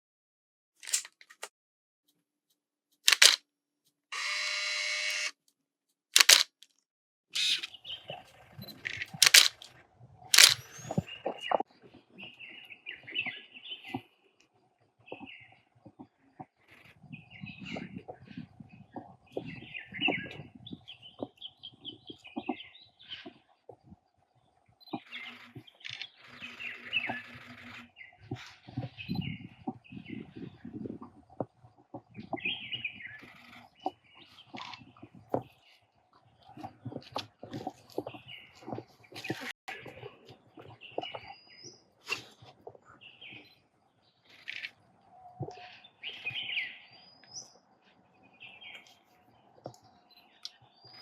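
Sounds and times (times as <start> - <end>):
camera shutter clicking: 3.1 - 3.4, 4.2 - 5.3, 6.2 - 6.6, 7.4 - 7.7, 9.2 - 9.7, 10.4 - 10.6
small birds chirping: 7.4 - 9.6, 10.2 - 51.0.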